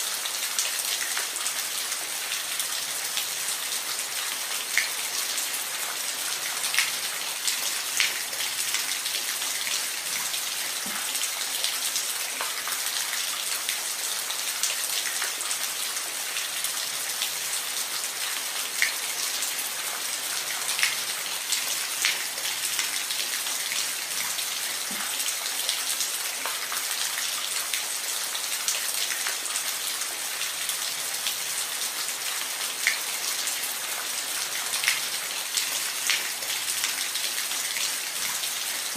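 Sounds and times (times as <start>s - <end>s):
steady rain hiss: 0.0s - 38.9s.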